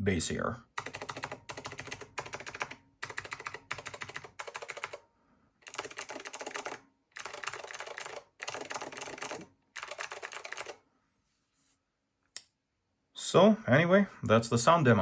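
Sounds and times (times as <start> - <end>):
fast typing on keyboard: 0.8 - 5.0, 5.6 - 10.8.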